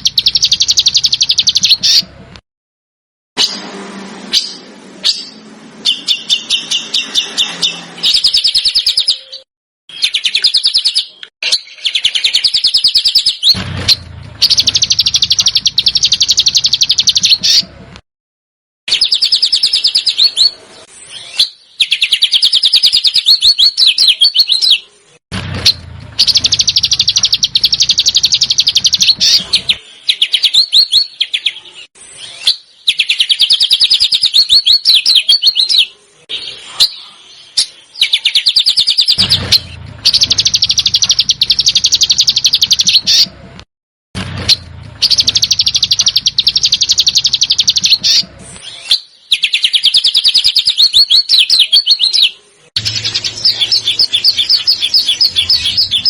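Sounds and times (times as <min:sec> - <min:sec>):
songbird rattling trills: 0:00.0 - 0:02.0, 0:11.8 - 0:17.6, 0:25.7 - 0:29.8, 0:38.4 - 0:43.2, 0:45.0 - 0:48.2.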